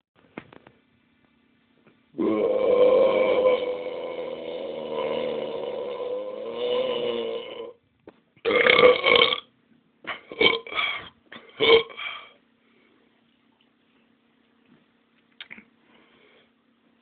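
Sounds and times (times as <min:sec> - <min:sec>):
person burping: 0:02.2 - 0:07.8, 0:08.4 - 0:09.5, 0:10.1 - 0:12.3.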